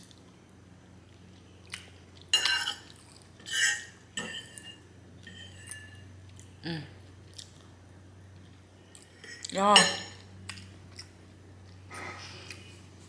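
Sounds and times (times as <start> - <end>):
utensil clinking and scraping dish: 2.4 - 6.0.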